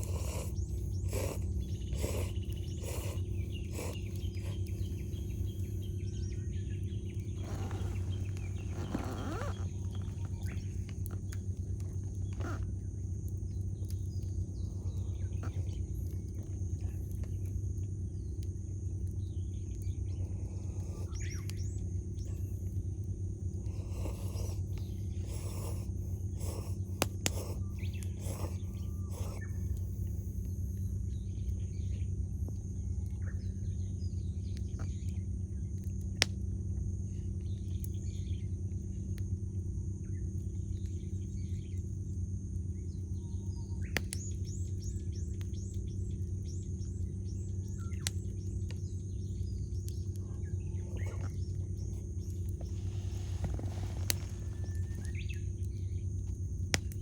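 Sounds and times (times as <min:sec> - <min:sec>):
birds chirping: 0:00.0 - 0:17.5, 0:23.6 - 0:32.1, 0:43.1 - 0:56.2
steady low hum: 0:00.0 - 0:57.0
campfire crackling and popping: 0:51.3 - 0:57.0.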